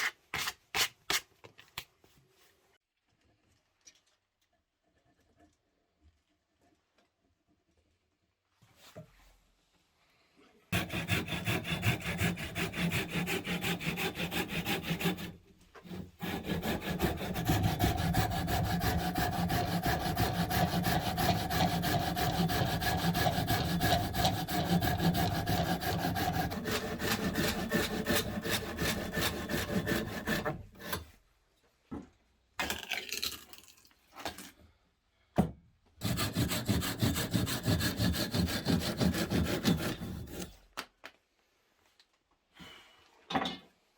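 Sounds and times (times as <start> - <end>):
saw cutting through wood: 10.8 - 31.1, 36.0 - 40.5.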